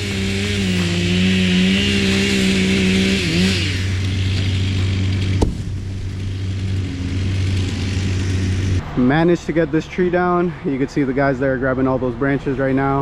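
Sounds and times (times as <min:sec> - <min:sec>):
chainsaw running: 0:00.0 - 0:08.8
heavy engine droning: 0:00.0 - 0:09.0.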